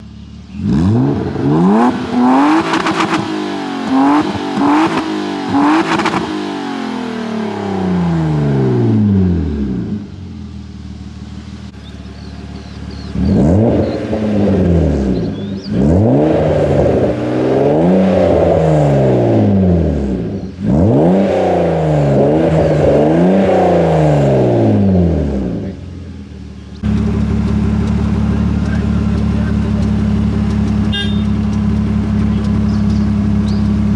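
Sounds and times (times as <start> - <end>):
exhaust cracks: 0.0 - 6.4, 8.7 - 33.9
car engine revving: 0.0 - 33.9.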